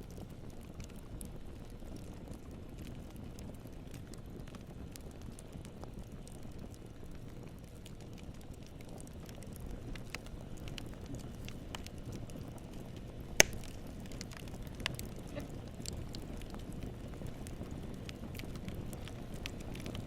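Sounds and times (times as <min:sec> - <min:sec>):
burning wood crackles: 0:00.0 - 0:20.0
campfire flame noise: 0:00.0 - 0:20.0
sharp loud fire pop: 0:13.4 - 0:13.7.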